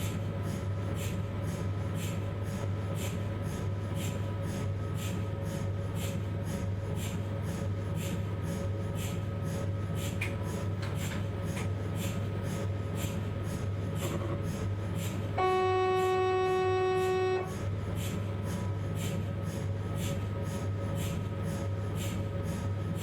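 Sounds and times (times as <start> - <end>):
scanner low hum: 15.2 - 18.6
loud buzzing tone: 15.4 - 17.6.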